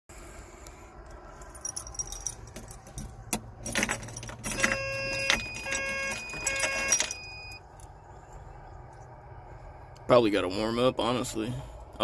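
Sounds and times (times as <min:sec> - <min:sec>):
keys jangling in ignition: 0:01.3 - 0:08.0
electronic warning beeper: 0:04.5 - 0:07.6.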